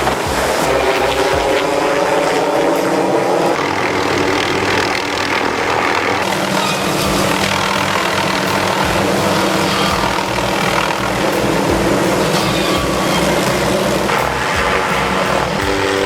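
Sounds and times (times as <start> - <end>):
helicopter engine hum: 0.0 - 16.0
helicopter rotor beat: 0.0 - 16.0.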